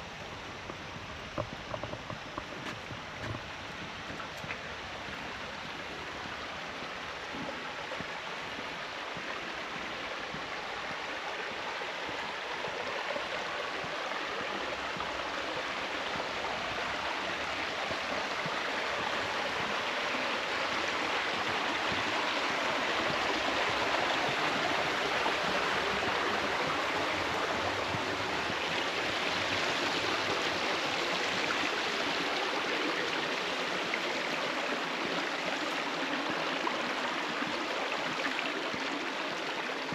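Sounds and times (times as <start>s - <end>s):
stream water rushing: 0.0s - 39.9s.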